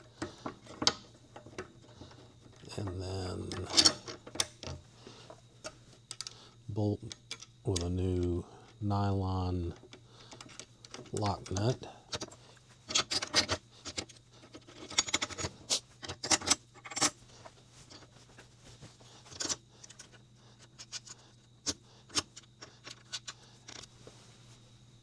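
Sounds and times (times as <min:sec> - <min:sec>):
small metal parts clinking: 0:00.2 - 0:04.8, 0:09.8 - 0:17.2, 0:19.3 - 0:21.2.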